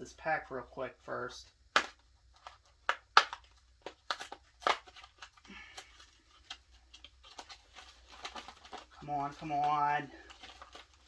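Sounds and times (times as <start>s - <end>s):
plastic packaging tearing: 1.8s - 9.6s, 10.2s - 11.0s.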